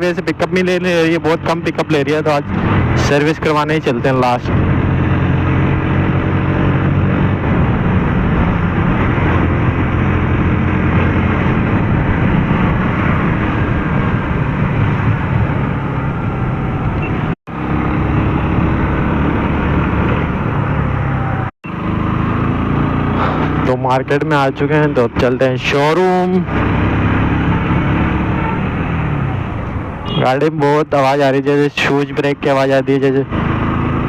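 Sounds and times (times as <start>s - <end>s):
rushing riding noise: 0.0s - 34.0s
motorcycle engine running: 4.5s - 24.9s.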